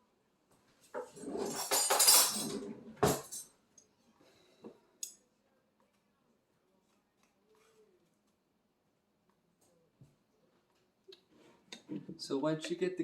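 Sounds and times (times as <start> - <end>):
metal spoons clinking: 1.2 - 3.5.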